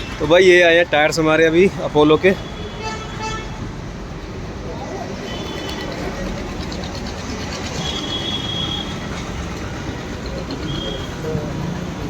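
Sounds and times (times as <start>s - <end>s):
tyre shop background noise: 0.0s - 12.0s
high-pitched squeal: 10.3s - 11.4s.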